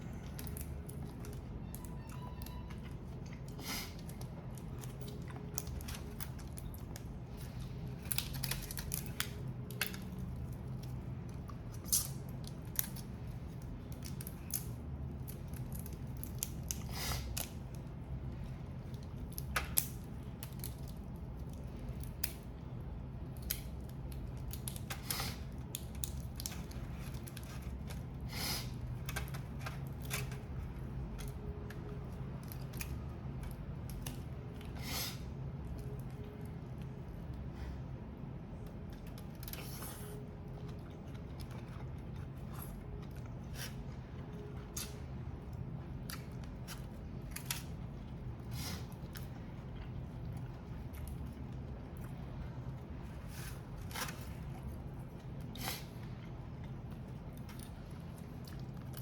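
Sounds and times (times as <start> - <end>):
low steady hum: 0.0 - 59.0
shells cracking and snapping: 3.2 - 18.1, 18.8 - 28.1, 29.0 - 34.6, 44.6 - 47.9.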